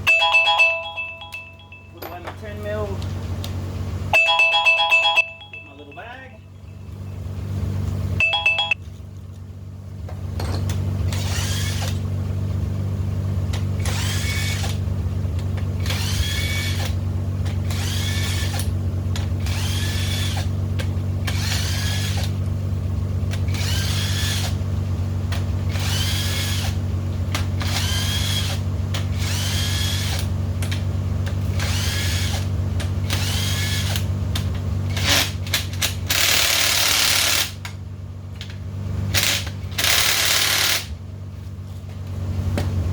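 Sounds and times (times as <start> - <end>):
steady low hum: 0.0 - 42.9
power tool bursts: 11.1 - 12.0, 13.8 - 14.8, 17.7 - 18.7, 27.6 - 30.3, 31.5 - 34.1, 34.9 - 37.6, 39.1 - 40.9.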